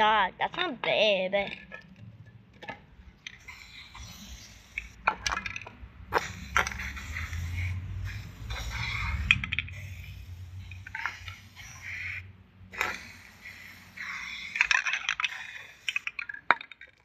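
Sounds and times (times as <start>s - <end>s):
sharp clicks and clinks: 14.0s - 17.0s.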